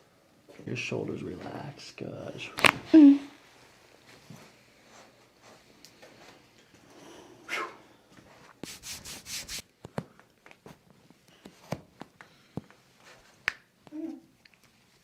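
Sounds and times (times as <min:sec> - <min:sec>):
body rustling on treatment table: 0:08.2 - 0:09.6.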